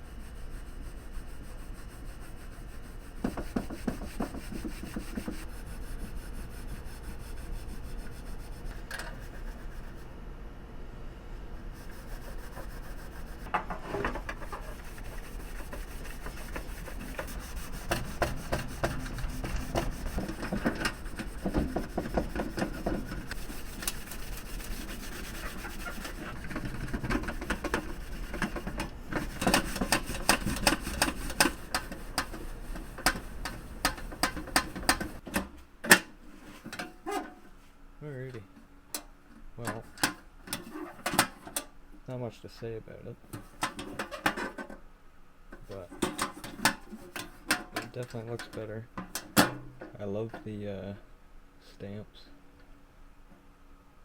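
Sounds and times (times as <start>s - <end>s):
cloth rubbing on painted metal: 0.0s - 10.2s, 11.6s - 35.2s.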